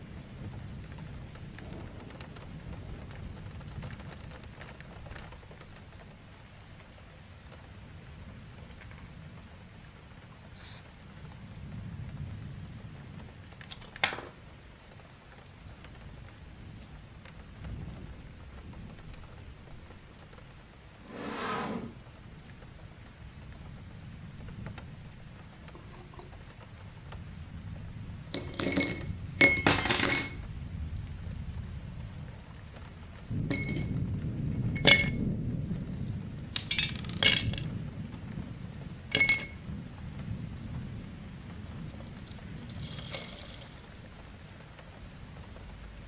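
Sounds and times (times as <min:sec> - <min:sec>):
small metal parts clinking: 0:28.3 - 0:30.4, 0:33.5 - 0:34.0, 0:34.8 - 0:35.2, 0:36.6 - 0:37.7, 0:39.1 - 0:39.6, 0:42.0 - 0:46.0.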